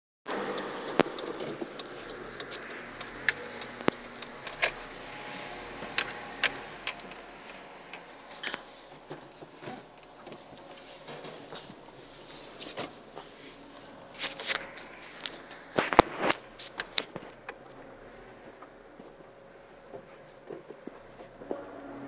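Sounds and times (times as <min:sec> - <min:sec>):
car creaks and clicks: 0:00.3 - 0:11.8, 0:14.2 - 0:17.8.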